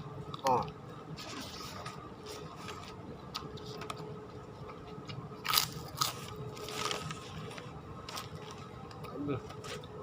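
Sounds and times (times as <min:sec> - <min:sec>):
person chewing food: 0:04.7 - 0:09.9
food crunching: 0:05.0 - 0:09.9.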